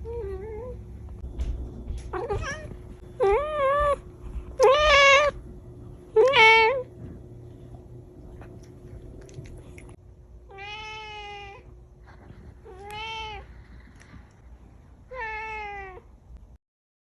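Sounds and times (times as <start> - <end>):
cat meowing: 4.6 - 5.4, 10.5 - 11.7, 15.1 - 16.0.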